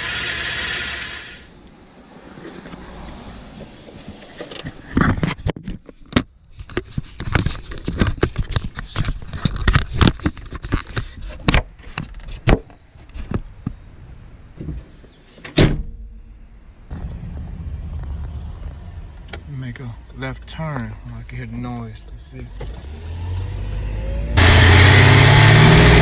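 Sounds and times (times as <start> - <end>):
loud bang: 15.6 - 23.1
car engine humming: 16.2 - 26.0
knocks and clattering: 16.9 - 24.3.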